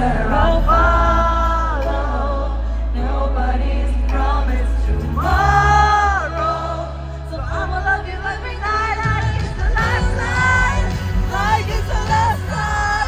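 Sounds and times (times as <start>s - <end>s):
lead vocal holding long notes: 0.0s - 13.0s
live pop concert music: 0.0s - 13.0s.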